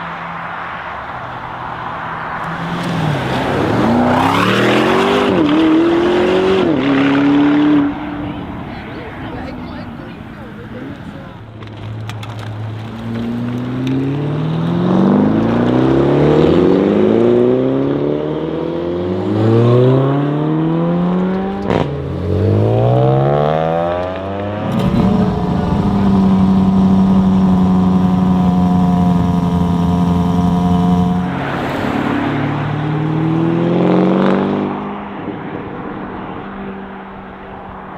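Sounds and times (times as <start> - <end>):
car engine accelerating hard: 0.0 - 37.9
exhaust pop: 2.2 - 13.6, 24.6 - 33.6.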